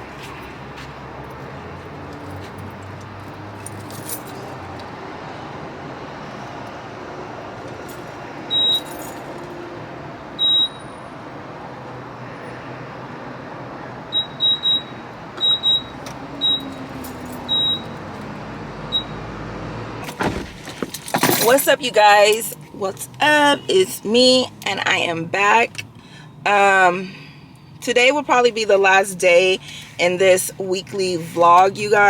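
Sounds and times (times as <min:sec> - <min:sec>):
outdoor traffic hum: 0:00.0 - 0:32.0.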